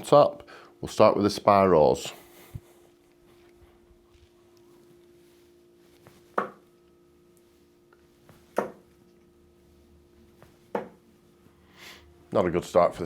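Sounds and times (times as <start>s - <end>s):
faint steady hum: 0.0s - 13.0s
darts thudding into dartboard: 6.3s - 6.6s, 8.5s - 8.9s, 10.7s - 11.0s.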